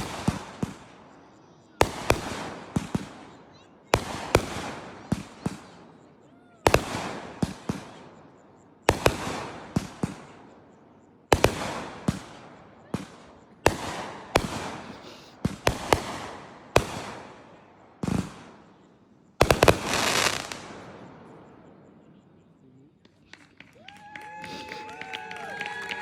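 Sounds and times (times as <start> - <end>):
fireworks bangs with echo: 0.0 - 23.3.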